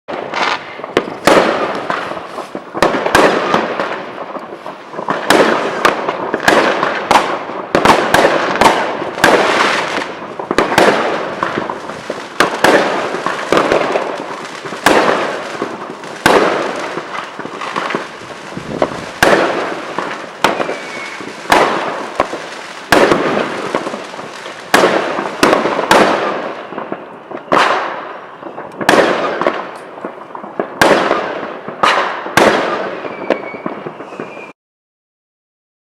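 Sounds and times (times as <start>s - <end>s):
rising whistle of rocket: 0.1s - 2.5s, 20.4s - 21.6s, 32.8s - 34.6s
fireworks bangs and pops: 0.1s - 34.6s.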